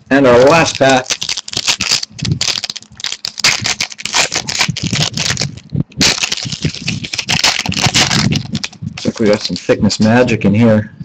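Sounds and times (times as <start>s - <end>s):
wrapper tearing and crinkling: 0.4s - 9.8s.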